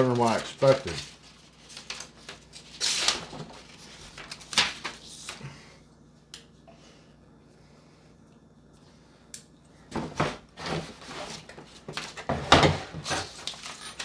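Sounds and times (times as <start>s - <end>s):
paper rustling: 0.0s - 5.4s, 13.0s - 14.0s.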